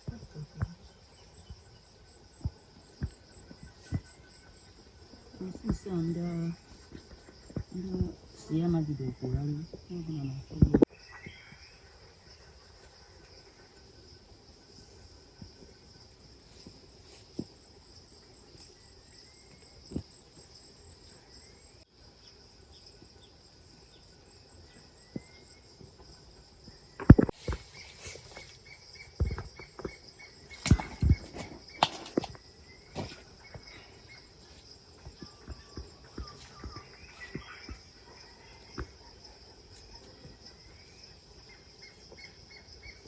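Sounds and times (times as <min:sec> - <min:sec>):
bird chirping: 0:00.0 - 0:13.6, 0:26.7 - 0:43.0
insects chirring: 0:00.0 - 0:43.0.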